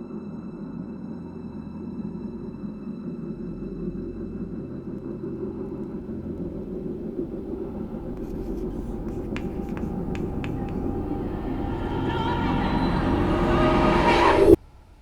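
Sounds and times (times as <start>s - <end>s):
low rumble: 3.1s - 14.6s.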